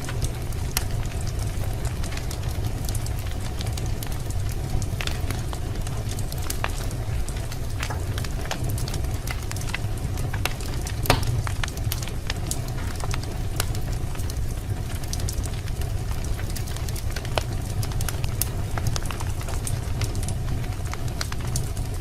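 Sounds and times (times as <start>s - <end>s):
fire crackling and popping: 0.0s - 22.0s
low rumble of flames: 0.0s - 22.0s.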